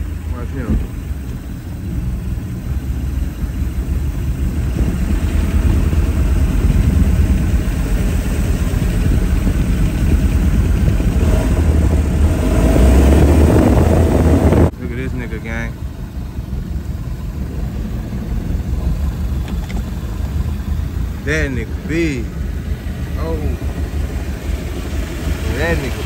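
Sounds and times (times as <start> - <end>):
outboard motor running: 0.0 - 26.0
person talking: 21.2 - 22.4, 23.2 - 23.7, 25.4 - 26.0.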